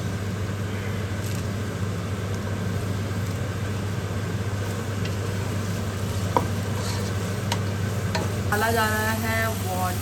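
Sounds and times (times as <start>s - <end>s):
meat sizzling in a pot: 1.1s - 10.0s.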